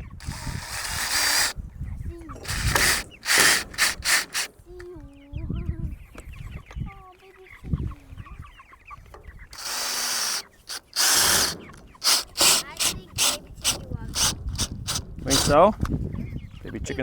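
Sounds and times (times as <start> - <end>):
chicks peeping: 0.0 - 0.6, 1.5 - 3.3, 4.6 - 12.3, 12.9 - 17.0
loud noisy bursts: 0.0 - 1.5, 2.4 - 4.5, 9.6 - 15.6
chickens clucking: 0.0 - 17.0.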